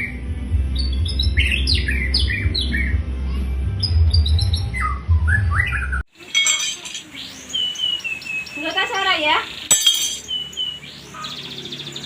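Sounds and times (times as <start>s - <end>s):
songbird chirping: 3.8s - 12.0s
high clinking: 6.2s - 7.2s, 9.7s - 10.4s.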